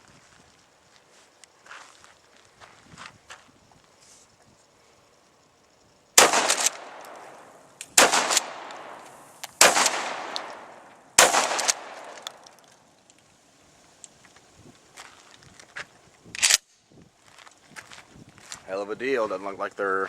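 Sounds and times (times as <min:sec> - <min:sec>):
shotgun shots: 0:06.2 - 0:12.6.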